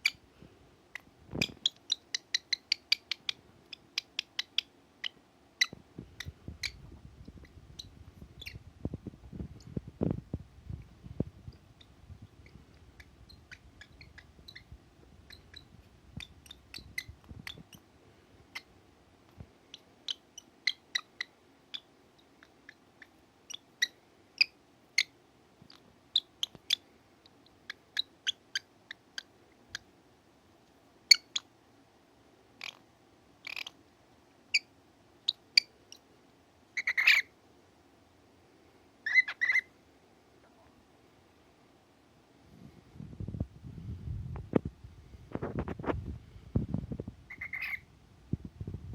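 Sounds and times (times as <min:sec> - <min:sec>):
cockatiel chirping: 0:00.0 - 0:00.2, 0:00.9 - 0:08.6, 0:11.8 - 0:17.8, 0:19.7 - 0:25.1, 0:25.7 - 0:26.8, 0:27.7 - 0:29.8, 0:31.1 - 0:31.5, 0:32.6 - 0:32.8, 0:33.4 - 0:33.8, 0:34.5 - 0:35.7, 0:36.8 - 0:37.3, 0:39.0 - 0:39.7, 0:47.3 - 0:47.9.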